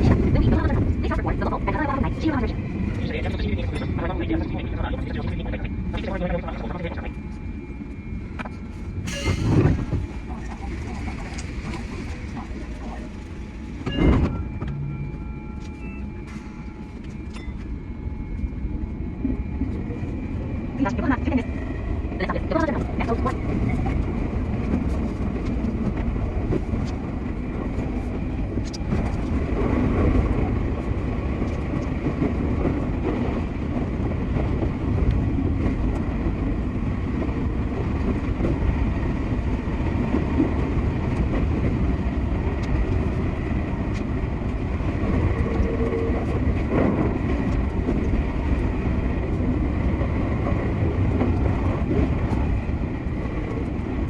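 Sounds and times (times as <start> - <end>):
train wheels rumbling on rail: 0.0 - 54.0
clickety-clack over rail joints: 22.6 - 54.0.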